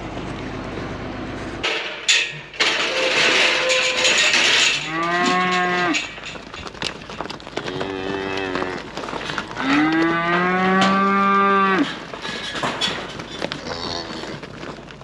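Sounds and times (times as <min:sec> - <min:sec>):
clicks and knocks: 0:01.6 - 0:07.8
calves mooing: 0:04.7 - 0:06.2, 0:07.6 - 0:09.0, 0:09.6 - 0:12.0, 0:13.6 - 0:14.4.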